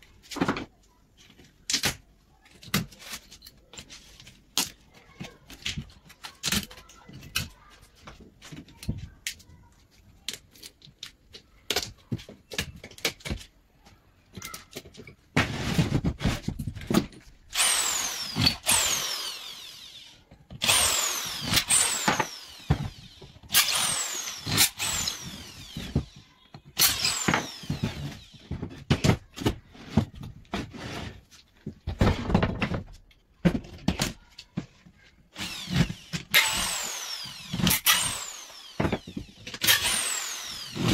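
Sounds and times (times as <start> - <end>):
power drill whining: 17.5 - 28.6, 35.3 - 40.9.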